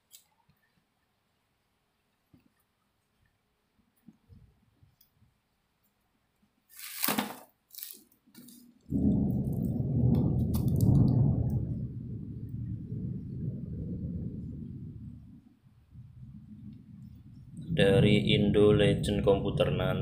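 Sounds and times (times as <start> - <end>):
packaging ripping: 6.7 - 8.8
loud low rumble: 8.9 - 20.0.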